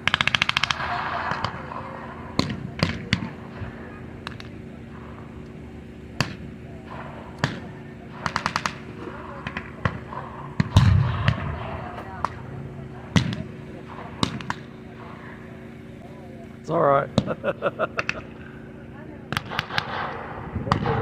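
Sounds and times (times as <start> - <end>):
machine-gun burst: 0.0 - 1.8, 19.3 - 21.0
single rifle shots: 10.6 - 12.4, 19.3 - 21.0
loud deep bang: 10.6 - 14.3, 19.5 - 21.0.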